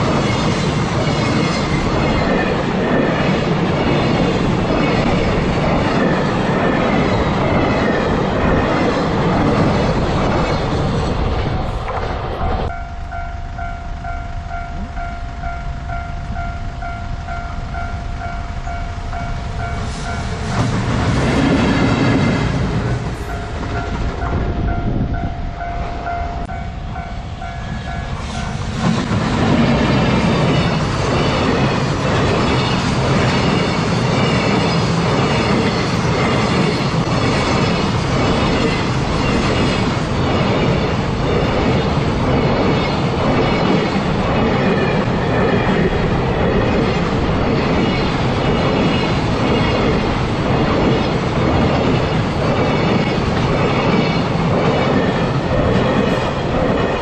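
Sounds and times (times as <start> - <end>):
train wagons clickety-clack: 0.0 - 57.0
level crossing warning bell: 12.7 - 20.8, 23.0 - 28.7.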